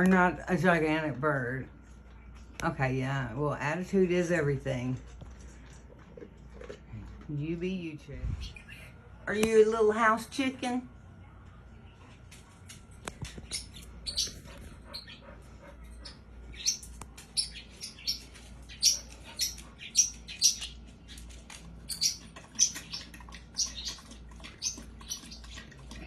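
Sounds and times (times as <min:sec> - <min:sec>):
small bird chirping: 0:08.3 - 0:09.0, 0:13.3 - 0:26.0.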